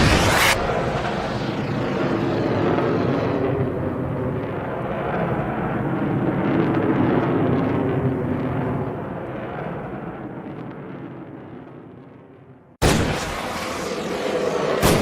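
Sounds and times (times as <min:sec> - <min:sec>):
steady rumbling noise: 0:00.0 - 0:10.8.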